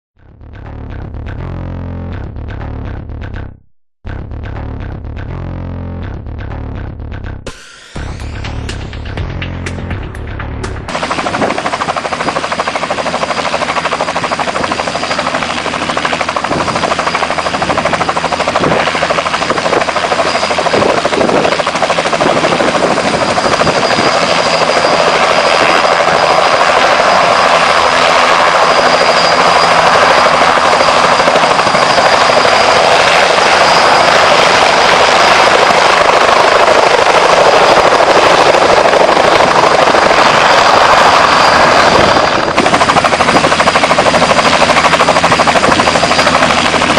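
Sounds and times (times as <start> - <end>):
high thin whine: 7.4 - 12.4
helicopter rotor and engine: 7.5 - 46.9.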